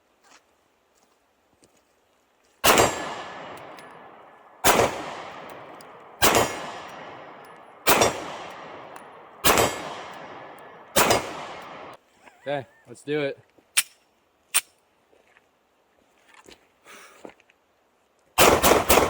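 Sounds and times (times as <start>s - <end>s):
pistol shots with echo: 2.6s - 12.0s, 18.4s - 19.0s.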